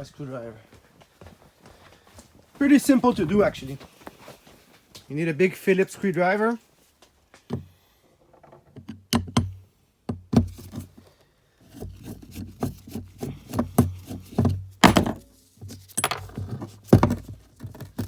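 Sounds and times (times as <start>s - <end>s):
metal parts knocking and clunking: 13.4s - 18.0s.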